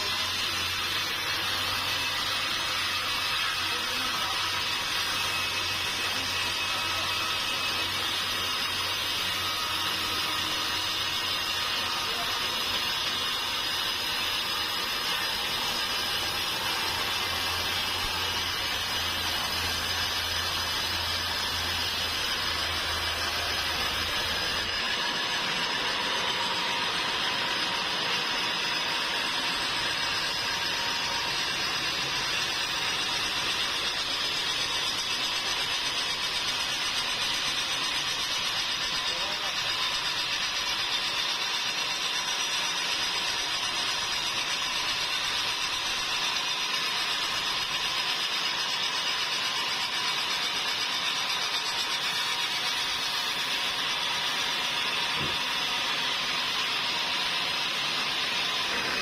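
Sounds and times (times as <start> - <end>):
sawmill machinery hissing: 0.0 - 59.0.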